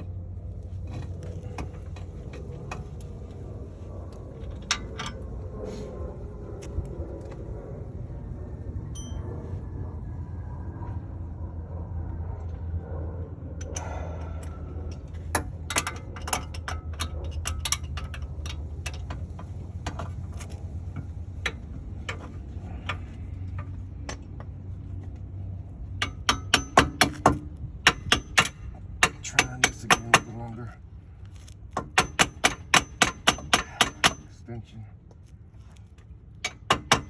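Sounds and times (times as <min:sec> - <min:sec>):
steady low rumble: 0:00.0 - 0:36.7
hammer striking metal socket: 0:32.0 - 0:34.3.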